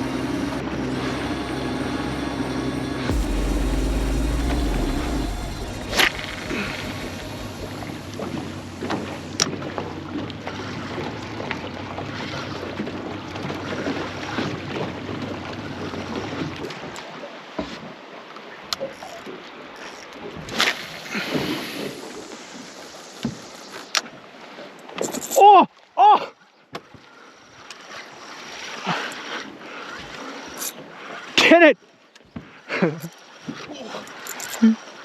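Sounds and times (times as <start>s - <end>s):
boat engine hum: 0.0s - 16.5s.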